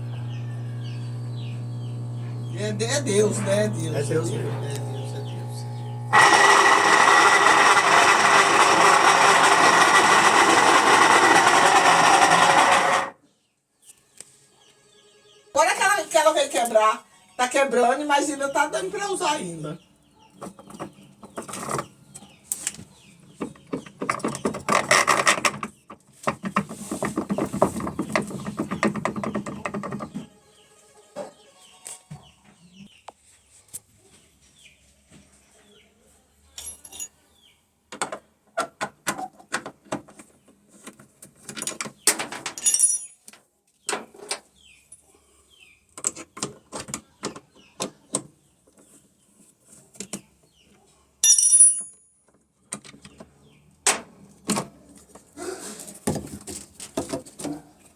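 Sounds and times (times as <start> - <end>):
washing machine buzzing loudly: 0.0 - 13.2.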